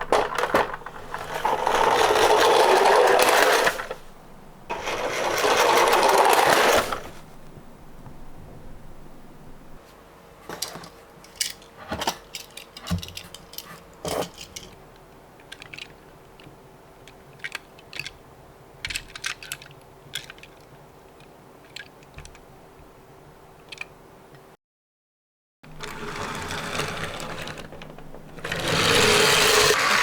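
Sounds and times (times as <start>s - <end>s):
toy cars clicking and clattering: 0.0s - 4.0s, 4.7s - 7.0s, 10.5s - 14.8s, 15.4s - 18.2s, 18.8s - 22.4s, 25.8s - 30.0s
faint steady hum: 0.0s - 24.5s.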